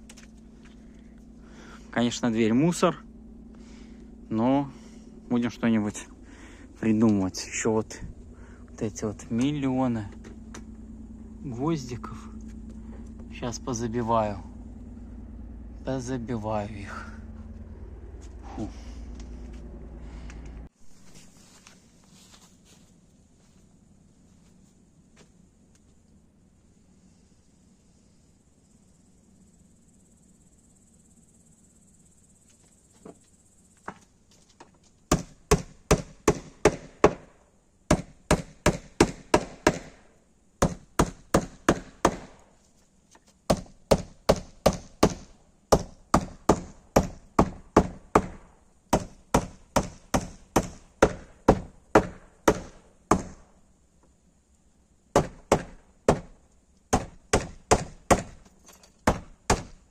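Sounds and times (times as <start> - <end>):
insects chirring: 0.0 - 59.9
hammer striking nails into wood: 35.1 - 37.3, 37.9 - 40.0, 40.6 - 42.4, 43.5 - 53.4, 55.1 - 59.8.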